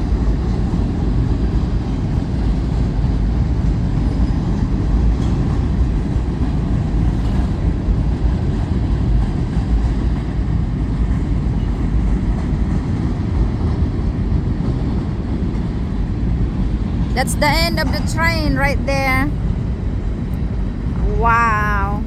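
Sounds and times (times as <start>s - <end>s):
train rumbling over rails: 0.0s - 22.0s.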